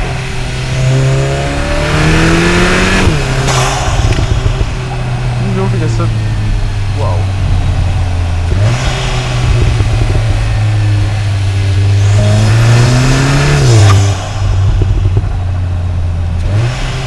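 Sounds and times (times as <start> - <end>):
car engine accelerating: 0.0 - 17.0.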